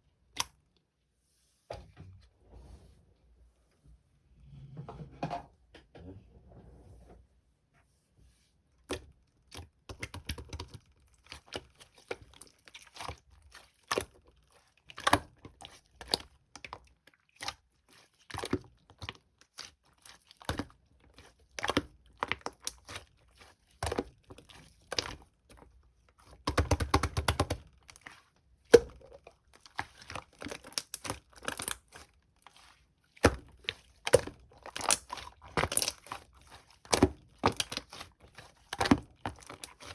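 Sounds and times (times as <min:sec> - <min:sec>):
slime squished with crackles: 0:08.9 - 0:39.9.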